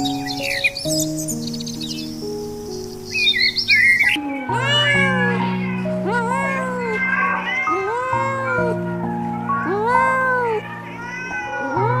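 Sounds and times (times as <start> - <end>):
background music: 0.0 - 12.0
cat meowing: 4.0 - 12.0.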